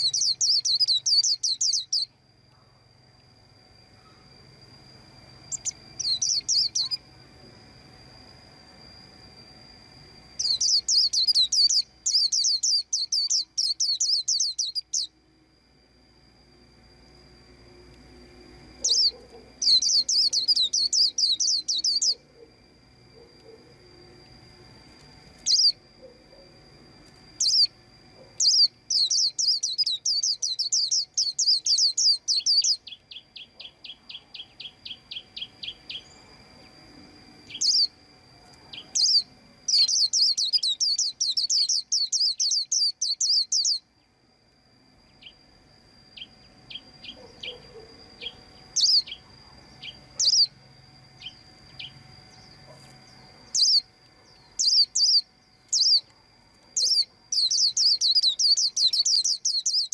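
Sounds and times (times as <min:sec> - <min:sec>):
bird chirping: 0:00.0 - 0:02.2, 0:05.5 - 0:07.0, 0:10.4 - 0:15.2, 0:18.8 - 0:22.5, 0:25.4 - 0:26.5, 0:27.4 - 0:36.7, 0:37.5 - 0:38.0, 0:38.6 - 0:43.9, 0:46.2 - 0:50.6, 0:51.2 - 0:56.1, 0:56.7 - 0:59.9
bird twittering trill: 0:00.0 - 0:02.3, 0:03.2 - 0:07.2, 0:08.2 - 0:15.4, 0:18.5 - 0:22.6, 0:25.3 - 0:26.6, 0:27.4 - 0:36.8, 0:37.4 - 0:38.0, 0:38.6 - 0:44.2, 0:46.1 - 0:56.1, 0:56.7 - 0:59.9.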